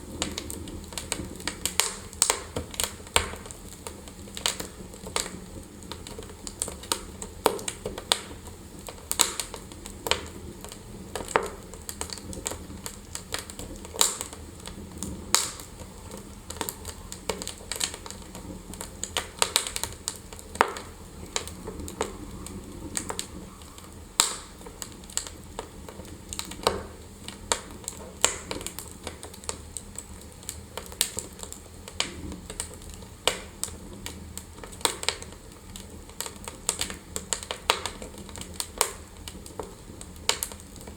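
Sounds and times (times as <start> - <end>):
low rumble of flames: 0.0 - 40.9
wood fire crackling and popping: 0.0 - 40.9.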